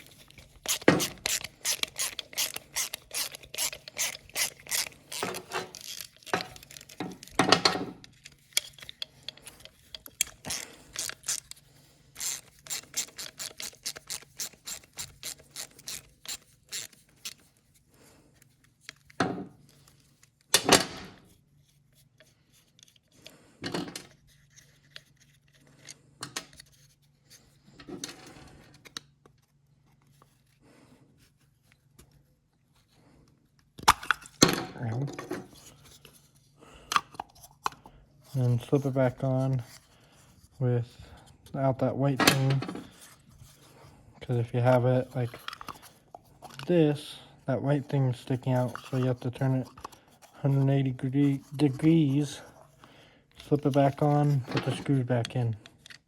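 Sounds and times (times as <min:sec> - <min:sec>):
socket ratchet clicking: 0:00.0 - 0:07.3, 0:08.6 - 0:11.6, 0:12.2 - 0:17.0
metal parts clunking: 0:00.0 - 0:11.5.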